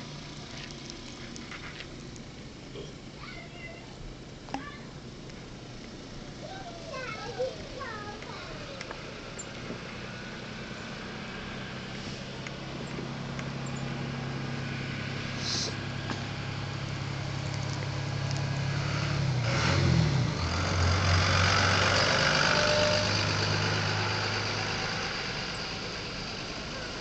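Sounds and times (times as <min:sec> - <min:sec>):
vehicle engine running: 0:00.0 - 0:27.0
rushing hiss: 0:15.3 - 0:15.9.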